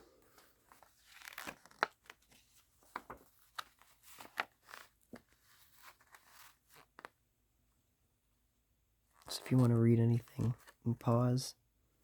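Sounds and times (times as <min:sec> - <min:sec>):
paper pages rustling: 0:00.2 - 0:07.2, 0:09.2 - 0:10.8.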